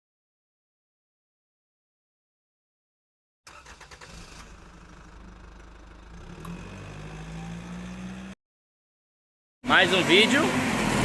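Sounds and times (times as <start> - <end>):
car engine running: 4.0 - 8.3.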